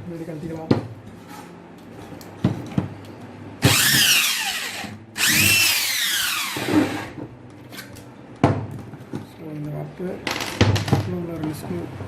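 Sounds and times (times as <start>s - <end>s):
power drill whining: 3.6s - 7.2s.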